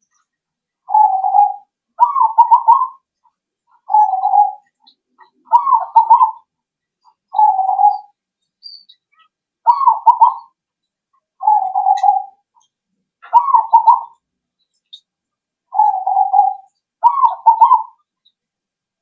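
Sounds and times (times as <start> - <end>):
dove cooing: 0.9 - 3.0, 3.8 - 6.5, 7.3 - 8.1, 9.7 - 10.6, 11.4 - 12.4, 13.2 - 14.2, 15.7 - 18.0.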